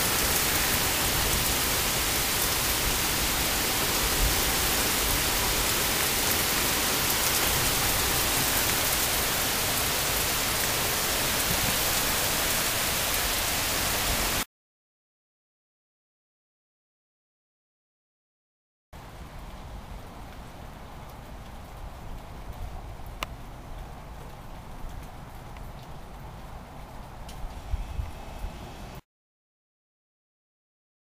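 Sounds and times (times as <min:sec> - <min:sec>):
heavy rain pouring: 0:00.0 - 0:14.5.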